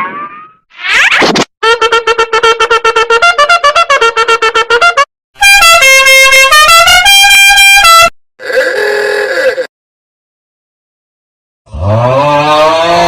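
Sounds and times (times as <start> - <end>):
blaring horn-like tune: 1.6 - 8.2.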